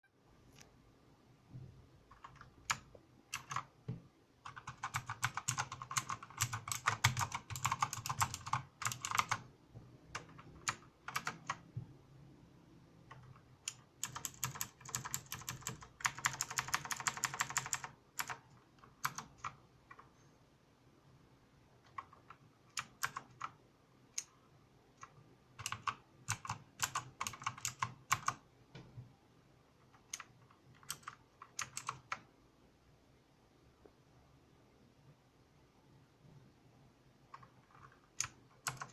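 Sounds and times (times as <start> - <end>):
mechanical keyboard typing: 2.1 - 3.7, 4.4 - 9.5, 10.1 - 11.7, 13.0 - 20.1, 21.8 - 24.4, 25.0 - 28.4, 29.8 - 32.3, 37.3 - 38.9.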